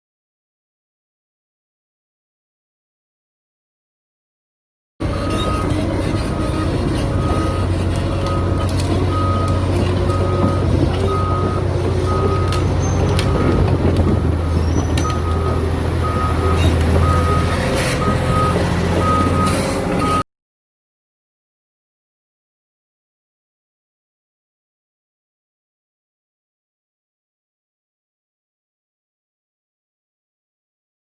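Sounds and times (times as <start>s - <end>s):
diesel engine droning: 5.0s - 20.2s
travel alarm beeping: 5.0s - 20.2s.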